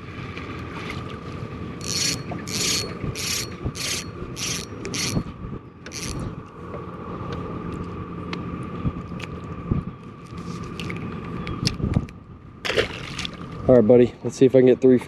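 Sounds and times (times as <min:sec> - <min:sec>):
fishing reel whirring: 0:01.8 - 0:06.4.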